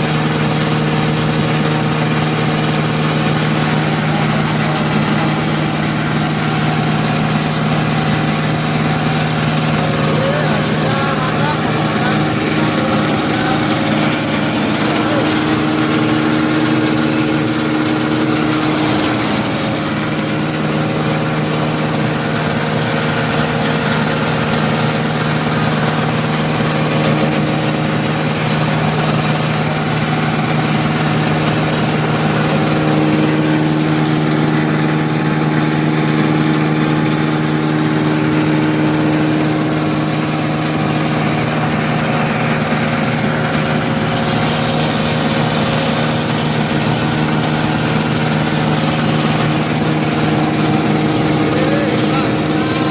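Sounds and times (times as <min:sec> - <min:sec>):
grinding mill droning: 0:00.0 - 0:52.9.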